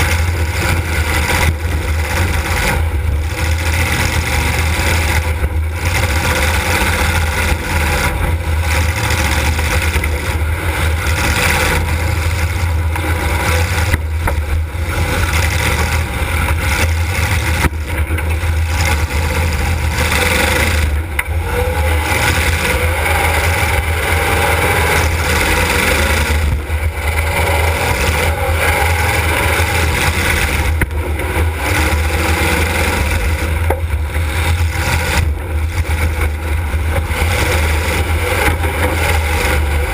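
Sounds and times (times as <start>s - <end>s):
car engine running loud: 0.0s - 39.9s.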